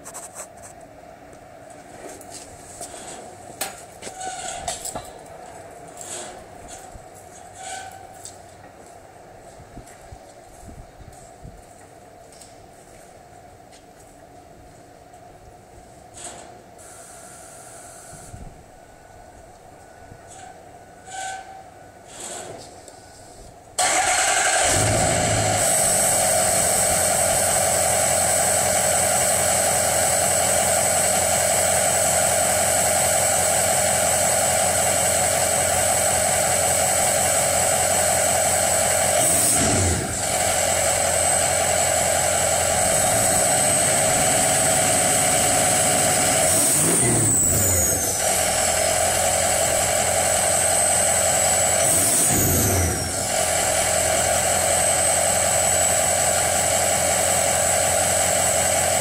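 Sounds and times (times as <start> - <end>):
diesel engine idling and revving: 23.8 - 59.0.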